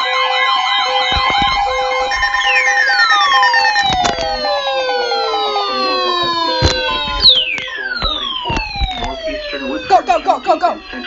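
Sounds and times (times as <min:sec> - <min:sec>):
electronic siren tones: 0:00.0 - 0:11.0
pulsing beeps: 0:00.8 - 0:11.0
sharp clicks: 0:03.8 - 0:04.5.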